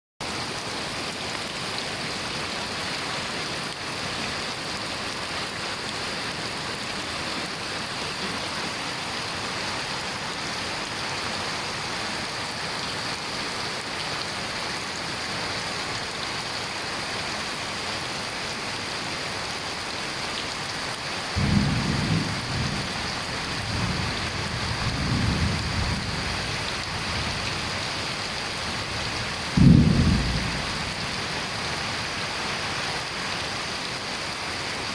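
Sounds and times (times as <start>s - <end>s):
steady rain falling: 0.2s - 34.9s
thunder rumbling: 21.4s - 31.9s.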